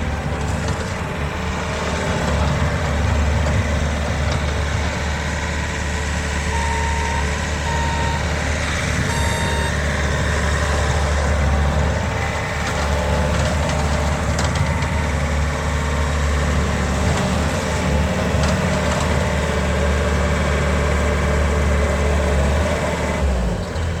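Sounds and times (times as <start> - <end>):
diesel engine running: 0.0 - 24.0
backup alarm beeps: 6.5 - 11.0.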